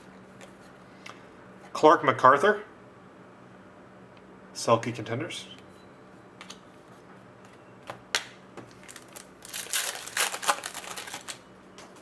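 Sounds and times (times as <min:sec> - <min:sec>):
card wrappers rustling and crinkling: 0:08.6 - 0:12.0.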